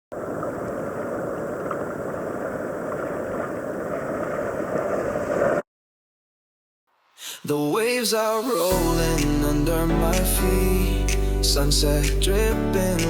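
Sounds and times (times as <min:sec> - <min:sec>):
wind: 0:00.0 - 0:05.6.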